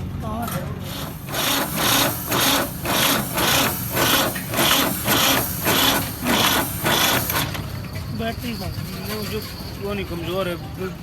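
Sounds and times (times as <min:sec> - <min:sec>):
hand tool rasping on metal: 0:00.9 - 0:07.5.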